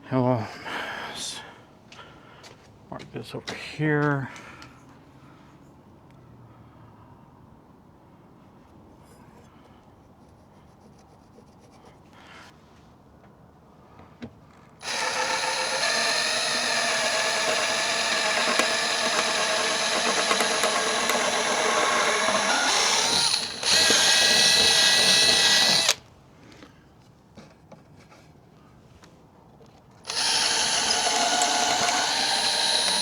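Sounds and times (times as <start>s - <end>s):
power drill boring: 14.8s - 26.0s, 30.0s - 33.0s.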